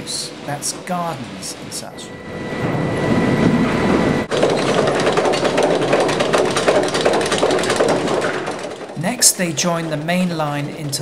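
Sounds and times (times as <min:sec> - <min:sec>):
faint high whine: 0:00.0 - 0:04.3
rattling clatter of conveyors: 0:00.0 - 0:11.0
sawmill machinery running: 0:00.0 - 0:11.0.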